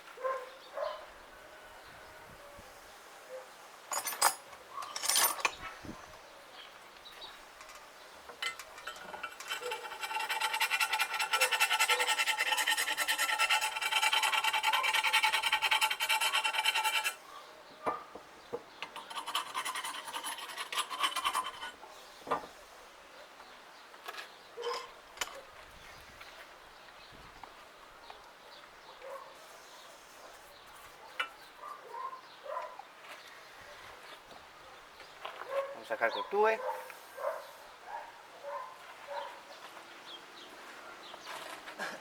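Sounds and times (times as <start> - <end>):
scraping paint off metal frame: 18.9 - 22.6.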